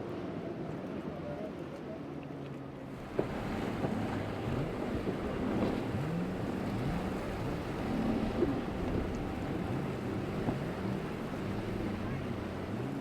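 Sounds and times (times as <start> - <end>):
outboard boat motors: 0.0 - 13.0
rushing water: 0.2 - 13.0
wind noise on microphone: 3.0 - 13.0.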